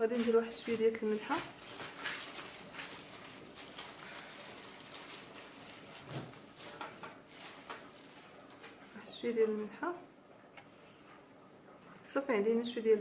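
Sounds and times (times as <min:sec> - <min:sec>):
couscous grains rustling by hand: 0:00.0 - 0:08.5.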